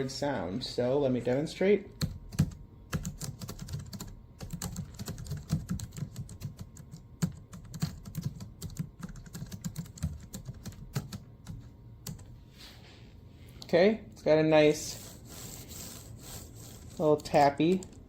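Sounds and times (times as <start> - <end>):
fast typing on a keyboard: 2.0 - 12.3, 15.8 - 18.0.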